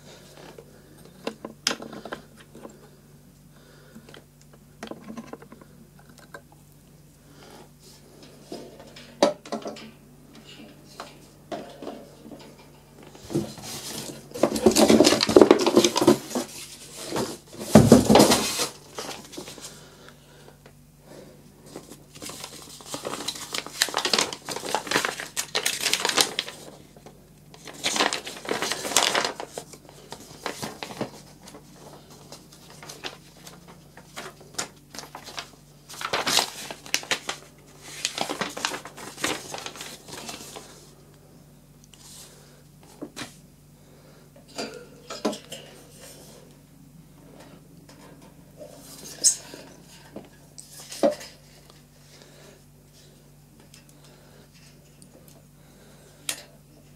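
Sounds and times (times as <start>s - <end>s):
plastic parts clattering: 8.5s - 19.6s
plastic wrapping crinkling: 21.8s - 40.9s.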